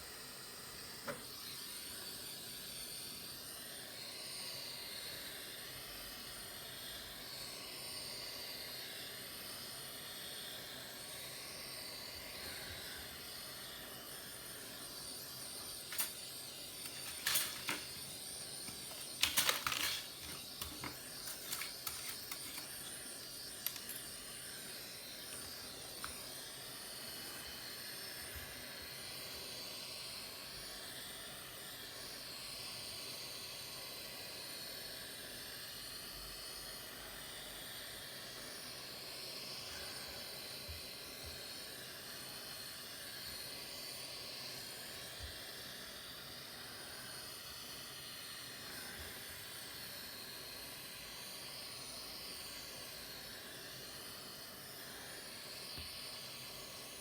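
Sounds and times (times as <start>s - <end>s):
steady hiss: 0.0s - 57.0s
clicks and scrapes of tools: 15.9s - 16.2s, 16.8s - 22.9s, 23.6s - 24.1s.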